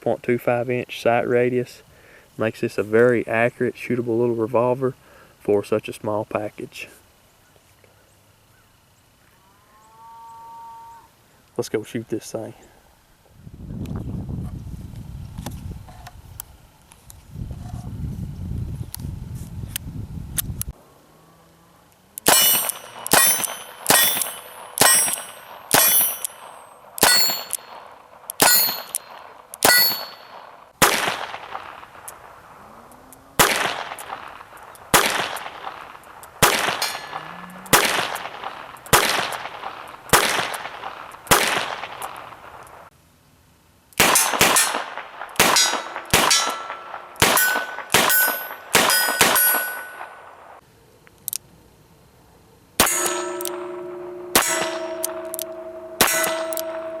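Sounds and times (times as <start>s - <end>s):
bullets clanging on steel targets: 22.2s - 30.5s, 35.0s - 40.7s, 44.0s - 50.2s, 52.8s - 57.0s
revolver gunshots: 22.2s - 32.4s, 33.4s - 42.8s, 44.0s - 50.6s, 52.8s - 57.0s.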